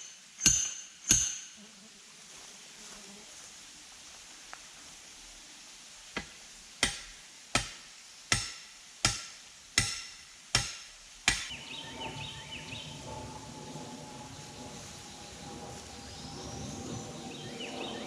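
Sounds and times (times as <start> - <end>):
hammer striking nail: 0.4 - 1.5, 6.8 - 11.5.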